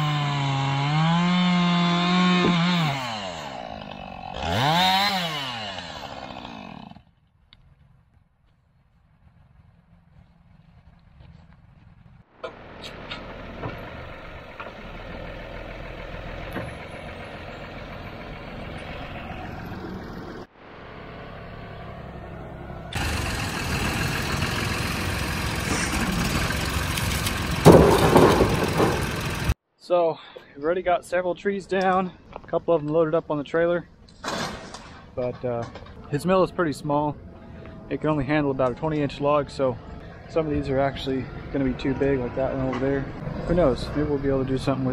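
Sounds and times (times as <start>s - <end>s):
engine running: 9.3s - 29.6s, 39.8s - 44.9s.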